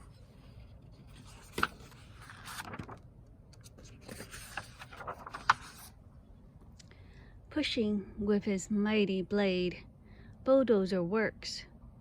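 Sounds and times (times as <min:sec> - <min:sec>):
paper rustling: 0:00.0 - 0:06.0.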